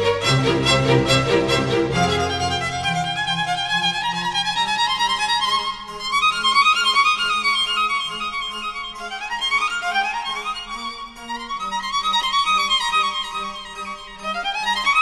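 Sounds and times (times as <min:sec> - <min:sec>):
violin playing quick runs: 0:00.0 - 0:05.2.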